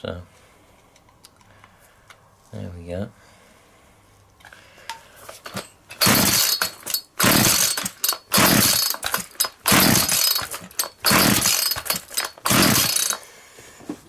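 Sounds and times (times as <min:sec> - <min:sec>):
chainsaw starter cord pulls: 0:05.2 - 0:13.3.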